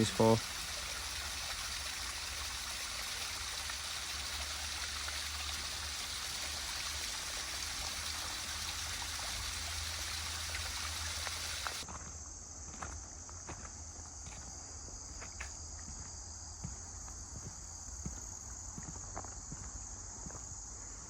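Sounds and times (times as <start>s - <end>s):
water rushing over waterfall: 0.0s - 11.8s.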